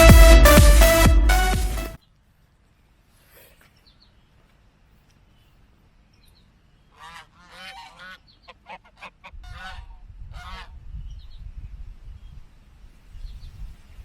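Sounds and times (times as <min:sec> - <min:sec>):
geese honking: 0:07.0 - 0:10.7.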